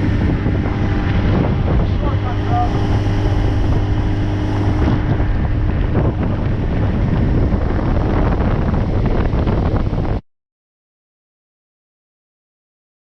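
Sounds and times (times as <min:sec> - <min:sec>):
small boat motor running: 0:00.0 - 0:10.2
wind buffeting microphone: 0:00.0 - 0:10.2.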